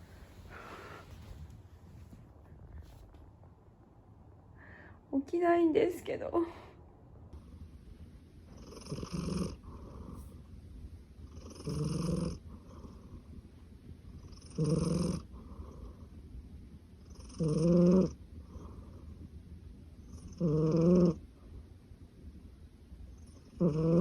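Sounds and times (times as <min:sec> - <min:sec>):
cat breathing quietly: 0:00.0 - 0:03.0
cat snoring: 0:08.5 - 0:10.4, 0:11.2 - 0:13.2, 0:14.1 - 0:16.2, 0:17.0 - 0:19.2, 0:20.0 - 0:21.2, 0:23.1 - 0:24.0.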